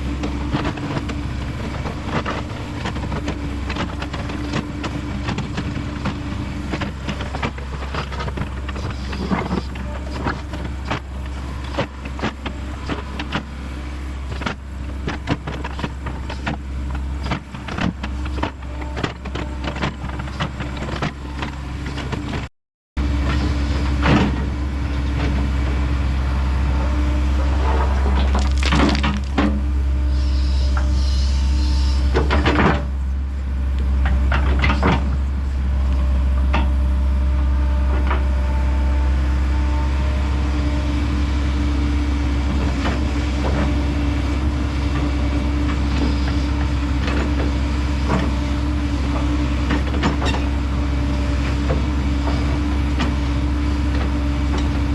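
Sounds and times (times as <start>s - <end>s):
excavator hydraulic whine: 0.0s - 54.9s
rock knocking and scraping: 28.0s - 29.6s.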